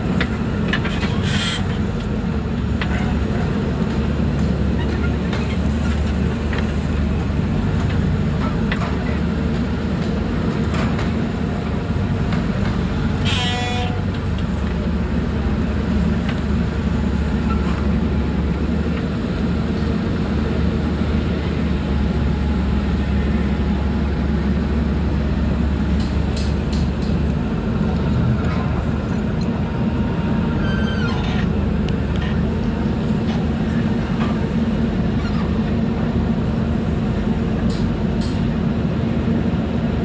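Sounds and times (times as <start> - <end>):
diesel engine running under load: 0.0 - 40.0.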